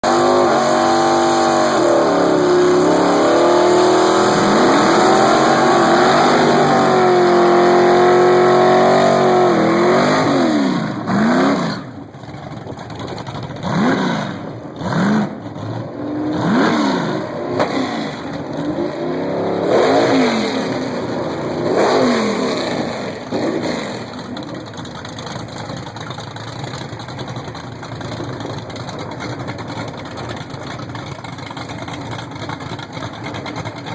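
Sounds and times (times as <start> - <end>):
engine revving sweeps: 0.0 - 12.0, 13.6 - 24.2
racing engine at full throttle: 0.0 - 33.9.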